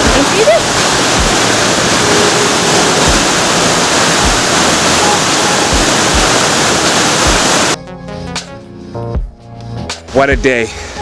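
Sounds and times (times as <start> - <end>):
waterfall roaring: 0.0 - 7.8.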